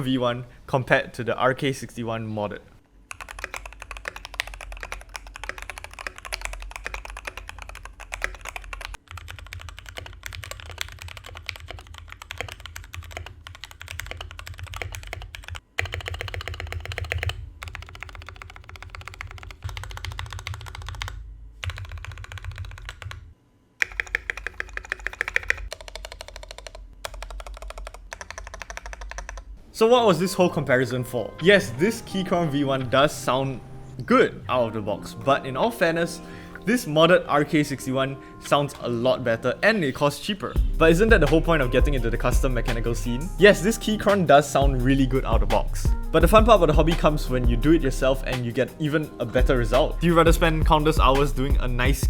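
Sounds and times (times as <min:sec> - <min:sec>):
fast typing on mechanical keyboard: 0:03.1 - 0:29.6.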